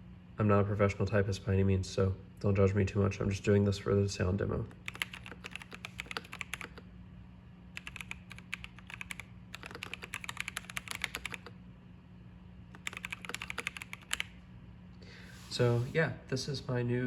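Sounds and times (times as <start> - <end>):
mechanical keyboard typing: 4.7 - 6.8, 7.8 - 11.6, 12.7 - 14.4.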